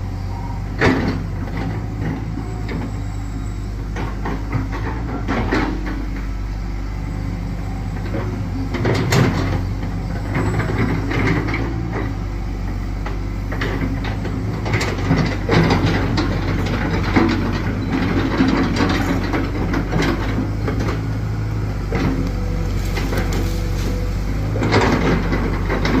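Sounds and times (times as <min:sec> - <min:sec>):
excavator diesel engine: 0:00.0 - 0:26.0
metallic clanks and scrapes: 0:21.8 - 0:26.0.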